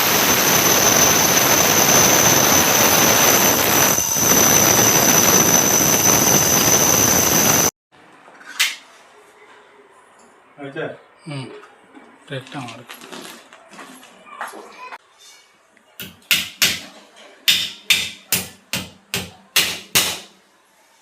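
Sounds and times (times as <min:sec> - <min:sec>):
electric power tool whining: 0:00.0 - 0:07.7.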